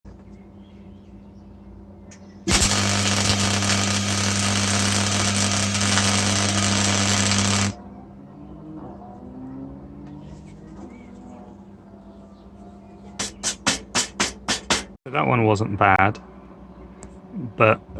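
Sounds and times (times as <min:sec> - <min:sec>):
welder electrical hum: 0:02.5 - 0:07.8
welding arc crackling hiss: 0:02.5 - 0:07.8.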